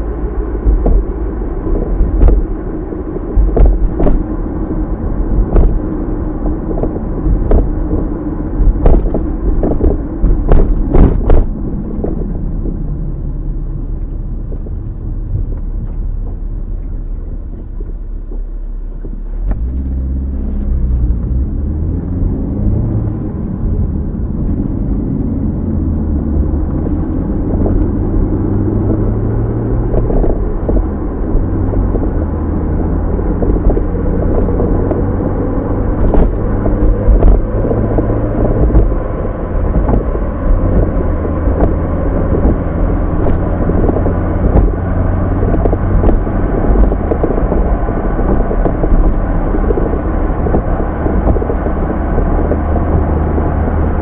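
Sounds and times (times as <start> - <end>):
car engine and tyre noise: 0.0 - 54.0.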